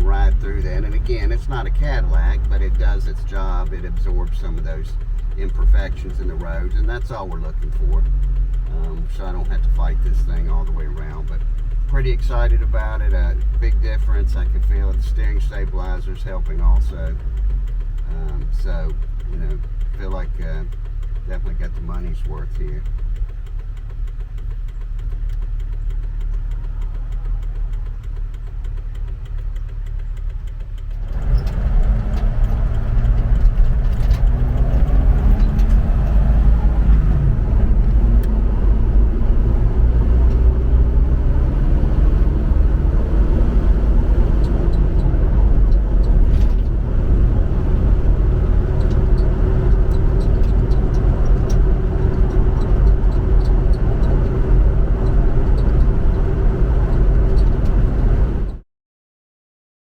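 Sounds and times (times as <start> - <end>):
road rumble: 0.0 - 58.6
vehicle engine accelerating: 0.0 - 58.6.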